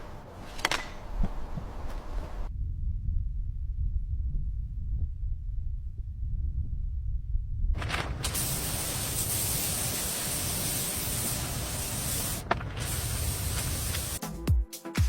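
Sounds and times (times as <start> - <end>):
steady spray hiss: 7.8 - 14.2
music with thumping beat: 14.2 - 15.0.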